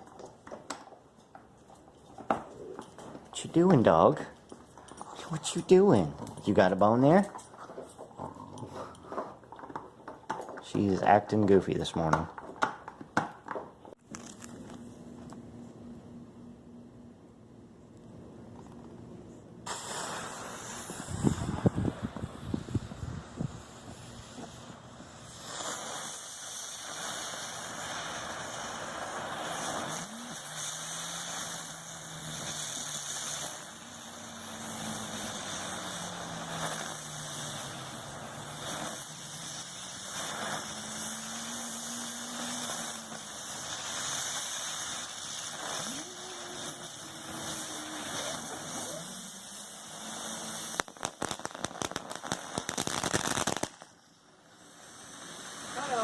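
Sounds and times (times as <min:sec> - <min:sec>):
ground fireworks spinning and hissing: 0:00.0 - 0:15.2, 0:18.3 - 0:56.0
dense crackling burst: 0:05.1 - 0:07.3, 0:19.6 - 0:56.0.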